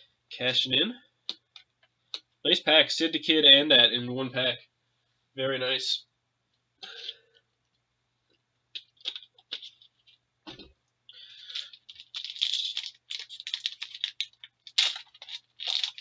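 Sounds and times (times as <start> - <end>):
plastic wrapper crinkling: 8.8 - 10.2, 11.4 - 16.0
wrapper clicks and rustles: 11.4 - 16.0.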